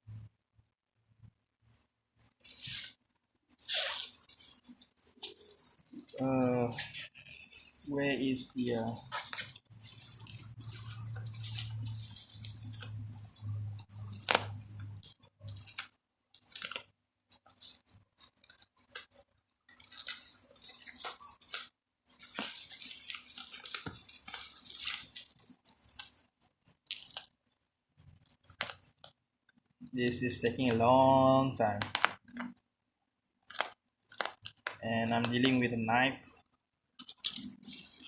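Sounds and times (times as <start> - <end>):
plastic wrap crinkling: 2.2 - 32.7, 33.4 - 38.0.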